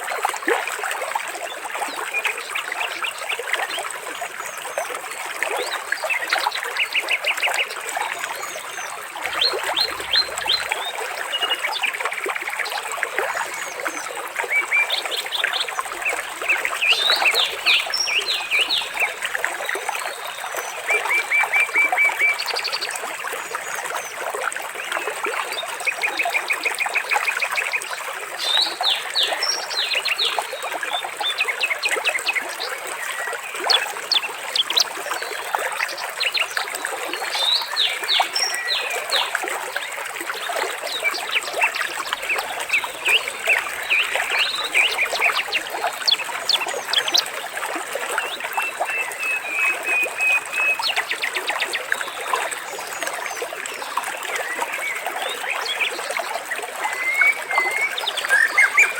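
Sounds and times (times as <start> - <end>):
water trickling: 0.0 - 58.9
birds chirping: 9.2 - 11.6, 15.7 - 19.3, 41.0 - 47.4.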